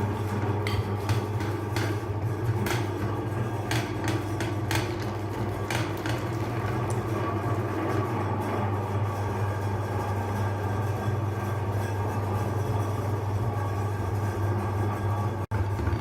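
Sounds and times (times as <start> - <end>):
sharp clicks and knocks: 0.3 - 7.2.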